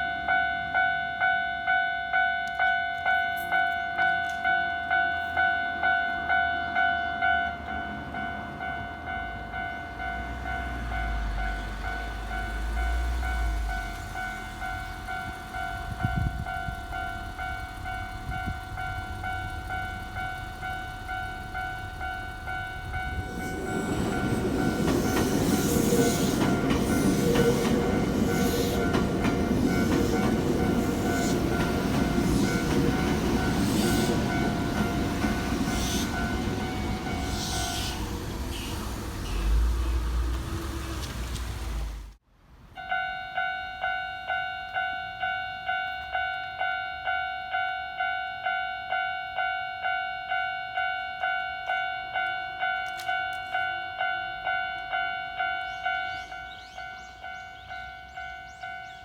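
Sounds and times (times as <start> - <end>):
train wheels on rails: 7.3 - 42.2.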